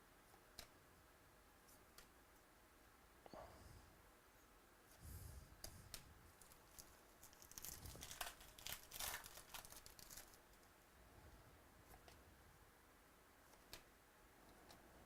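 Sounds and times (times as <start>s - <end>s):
card wrappers crinkling: 6.4s - 10.7s.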